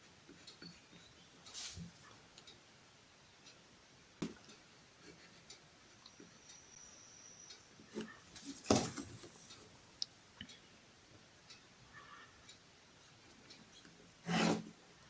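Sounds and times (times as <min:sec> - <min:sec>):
scrape and rustle of paper: 0:01.4 - 0:02.2
pencil scratching on paper: 0:14.2 - 0:14.7.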